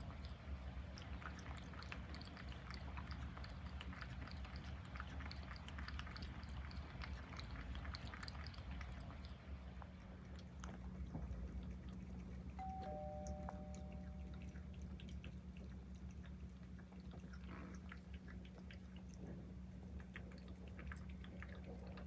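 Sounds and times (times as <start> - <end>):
cat lapping water: 0.0 - 22.0
low steady hum: 0.0 - 22.0
two-note chime: 12.6 - 14.4.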